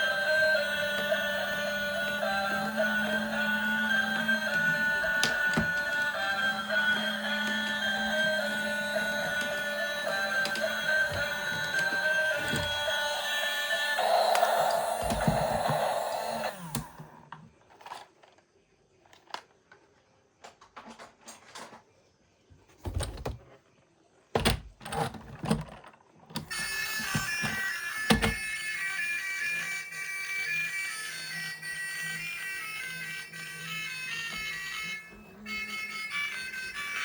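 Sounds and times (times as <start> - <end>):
reedy electronic tune: 0.0 - 17.0.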